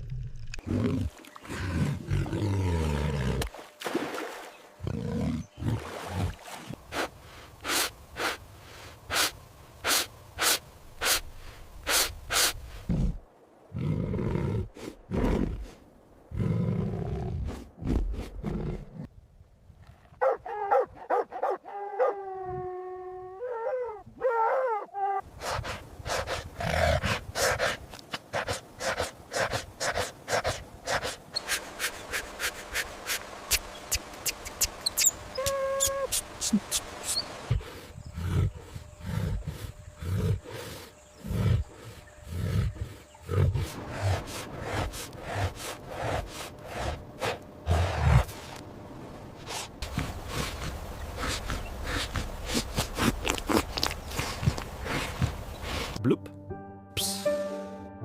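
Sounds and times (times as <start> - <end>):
dog barking: 20.2 - 22.2
dog whining or howling: 21.6 - 25.2.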